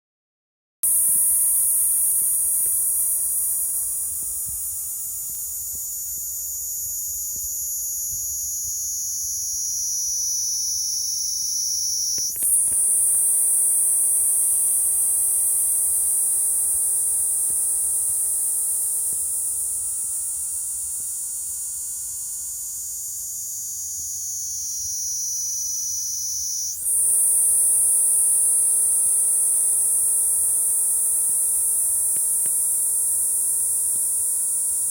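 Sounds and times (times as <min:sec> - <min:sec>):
cicada shrill high buzz: 0:00.8 - 0:34.9.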